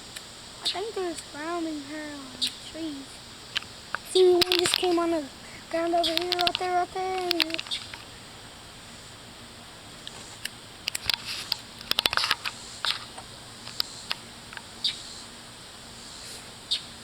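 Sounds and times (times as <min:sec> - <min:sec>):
birds making harsh chack notes: 0:00.6 - 0:08.2
sharp bird clicks: 0:02.4 - 0:05.2, 0:06.0 - 0:08.2, 0:10.0 - 0:15.2.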